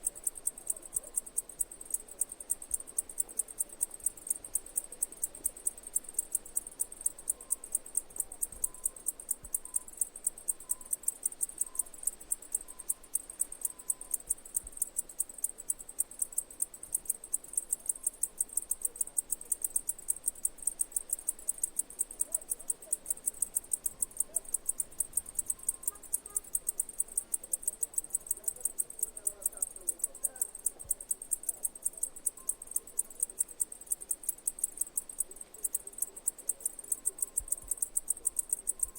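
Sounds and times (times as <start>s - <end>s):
cicadas pulsing buzz: 18.3s - 38.9s.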